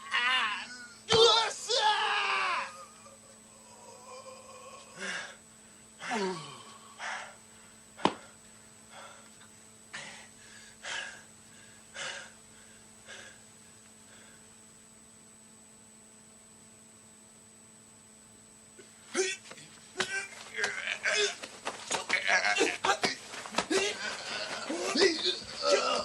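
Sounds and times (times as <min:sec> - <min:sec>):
faint tape hiss and hum: 0:00.0 - 0:26.0
breathy grunts: 0:03.5 - 0:05.4, 0:06.0 - 0:07.4, 0:19.1 - 0:26.0.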